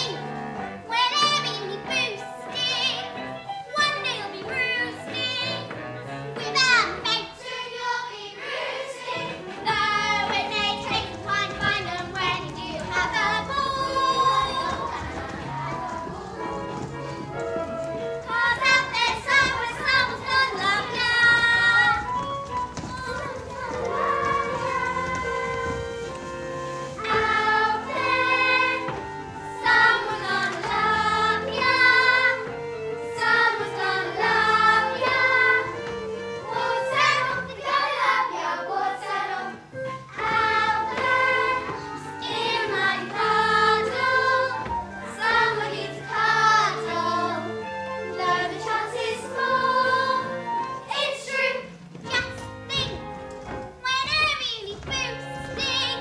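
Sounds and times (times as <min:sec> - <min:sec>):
children singing in chorus: 0:07.3 - 0:17.0, 0:22.9 - 0:25.8, 0:27.0 - 0:50.4.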